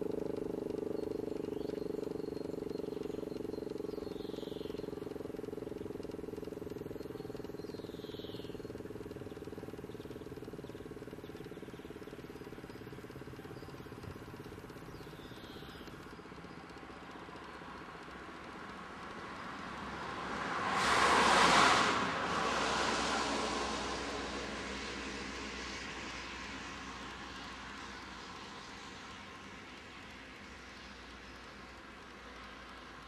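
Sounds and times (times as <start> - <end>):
faint low hum: 0.0 - 33.0
bird chirps: 0.1 - 16.8
vehicle passing: 19.7 - 26.5.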